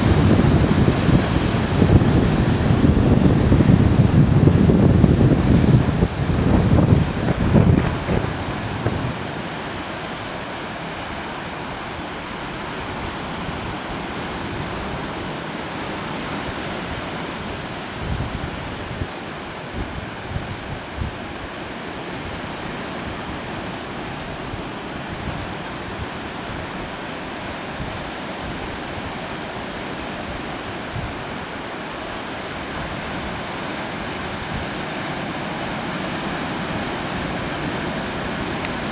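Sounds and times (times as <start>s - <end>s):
wind buffeting microphone: 0.0s - 11.1s, 16.4s - 31.6s
ocean surf: 0.0s - 38.9s.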